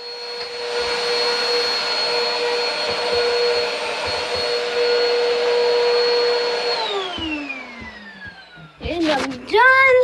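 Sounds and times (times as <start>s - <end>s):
vacuum cleaner running: 0.0s - 10.0s.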